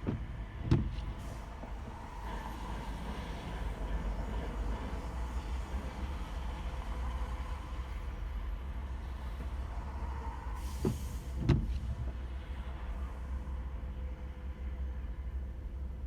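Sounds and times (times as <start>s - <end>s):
short thumps: 0.0s - 1.2s
car road and engine rumble: 0.0s - 16.0s.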